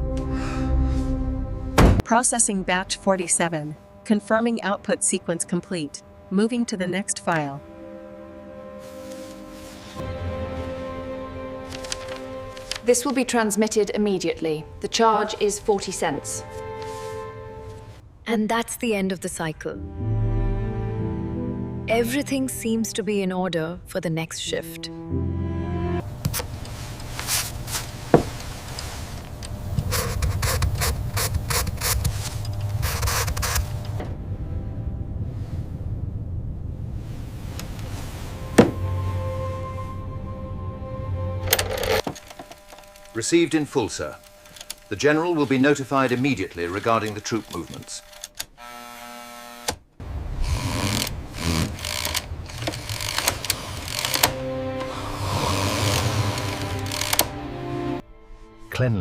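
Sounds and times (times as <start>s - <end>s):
low steady hum: 1.5s - 20.0s, 21.6s - 48.1s
scraping and rubbing strokes: 8.8s - 10.8s, 16.3s - 17.8s, 26.4s - 33.9s, 37.0s - 39.6s
telegraph sounder clicking: 41.6s - 48.5s.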